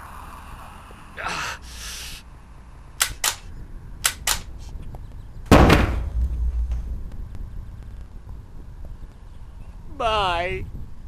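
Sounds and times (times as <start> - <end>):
gunshots: 5.5 - 7.0.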